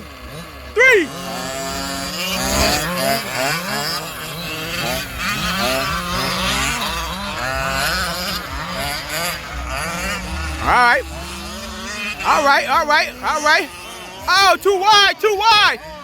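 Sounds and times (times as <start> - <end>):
rc truck engines buzzing: 0.0 - 16.0.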